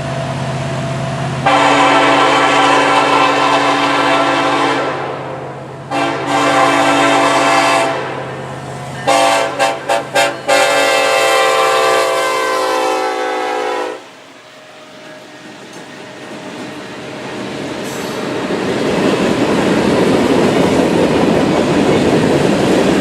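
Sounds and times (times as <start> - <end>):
locomotive engine drone: 0.0 - 23.0
locomotive air horn: 1.4 - 5.3, 5.9 - 14.2.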